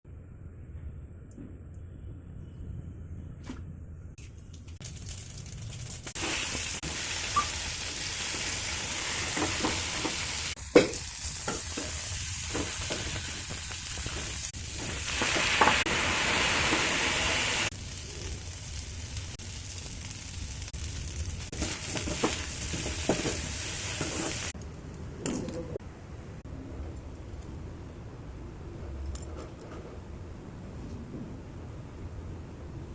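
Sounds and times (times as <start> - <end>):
food frying in hot oil: 4.6 - 24.6.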